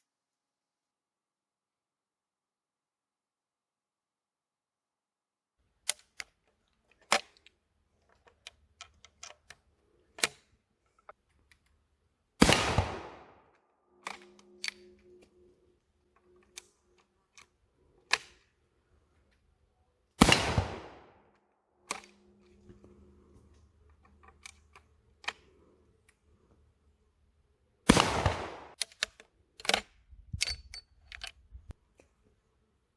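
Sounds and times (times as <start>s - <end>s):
rifle handling clicks and knocks: 5.8s - 11.9s, 14.0s - 19.5s, 21.2s - 26.6s, 28.7s - 32.3s
rifle shots: 12.4s - 13.4s, 20.2s - 21.2s, 27.9s - 28.8s.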